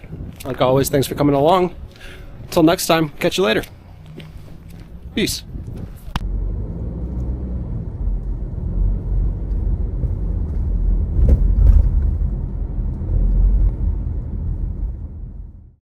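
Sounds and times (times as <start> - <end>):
loud low rumbling: 3.6 - 15.8.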